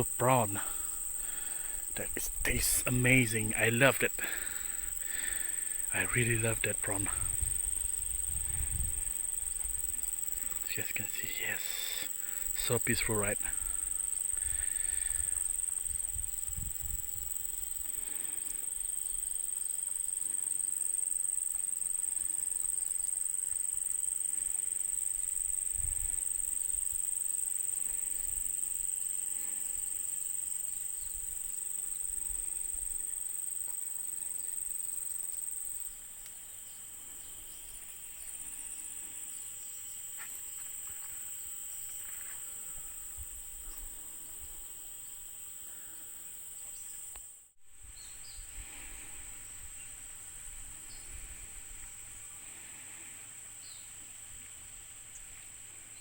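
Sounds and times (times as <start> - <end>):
high-pitched insect chorus drone: 0.0 - 56.0
wind rumble on microphone: 7.1 - 9.9, 14.4 - 17.4, 25.7 - 26.2.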